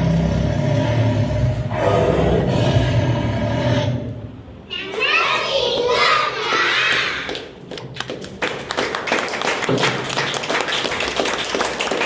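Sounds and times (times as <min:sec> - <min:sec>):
crowd clapping: 0:06.4 - 0:12.0.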